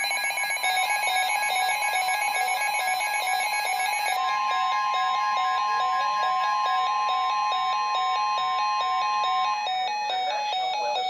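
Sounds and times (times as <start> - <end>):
steady alarm tone: 0.0 - 11.0
beeping square-wave melody: 4.1 - 10.8.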